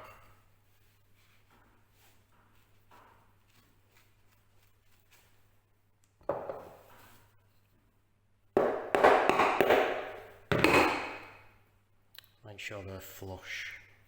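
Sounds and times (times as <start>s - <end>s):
hammer knocking wooden dowels: 6.3s - 6.9s, 8.6s - 11.4s.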